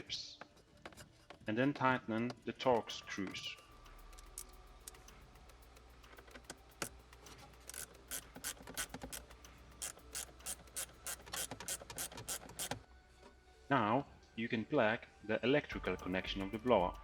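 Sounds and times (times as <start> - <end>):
sharp mechanical clicks: 3.7 - 12.8.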